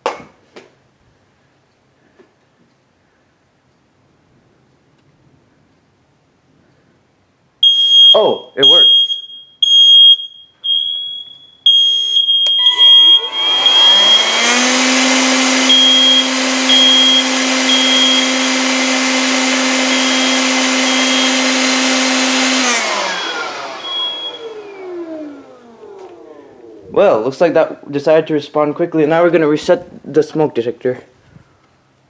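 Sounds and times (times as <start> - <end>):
smoke alarm beeping: 7.6 - 24.8
electric blower whine: 12.4 - 27.0.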